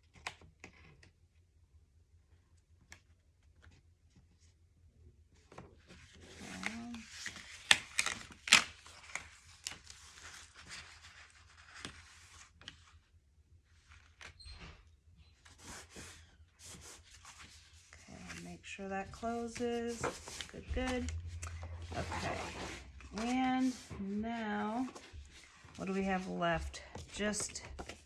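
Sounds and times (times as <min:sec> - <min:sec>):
paper rustling and rubbing: 0:05.8 - 0:13.0, 0:15.4 - 0:28.0.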